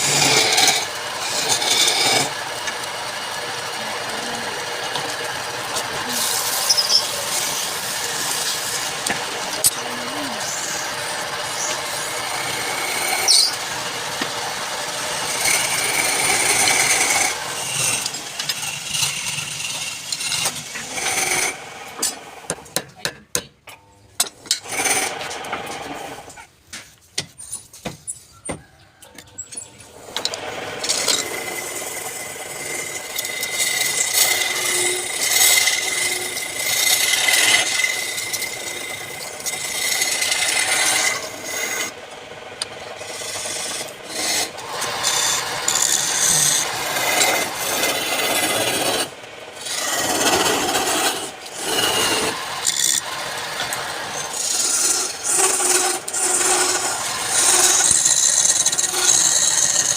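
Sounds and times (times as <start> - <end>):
tool scraping wood on lathe: 0.0 - 22.8, 24.4 - 59.9.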